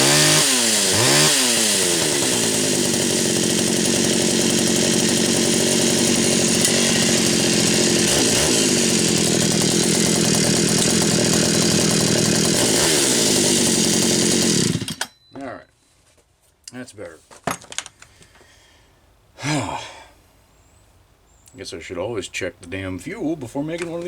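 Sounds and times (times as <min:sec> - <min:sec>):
chainsaw idling and revving: 0:00.0 - 0:15.1.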